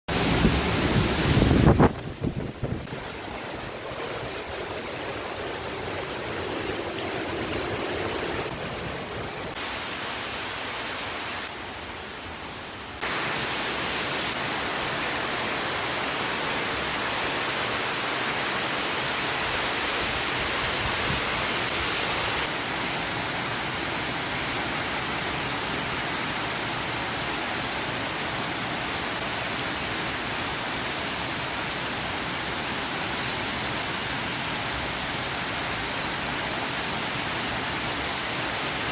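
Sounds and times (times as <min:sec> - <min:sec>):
heavy wind blowing: 0:00.1 - 0:11.5, 0:19.1 - 0:22.5.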